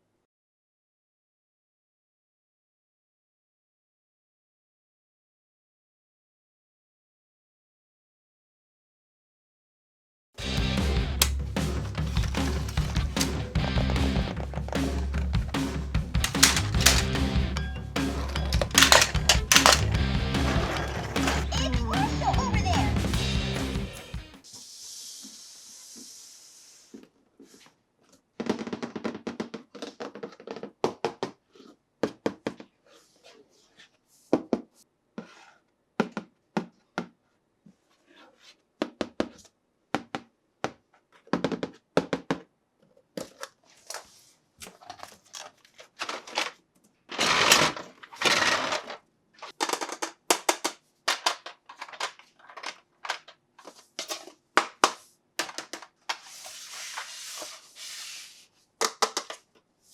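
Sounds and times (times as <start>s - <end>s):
packaging crinkling: 12.0s - 13.2s, 16.2s - 17.1s, 18.5s - 20.0s
plastic toys clicking and tapping: 12.0s - 13.4s, 14.4s - 20.0s, 20.7s - 23.0s, 44.6s - 56.3s, 58.8s - 59.6s.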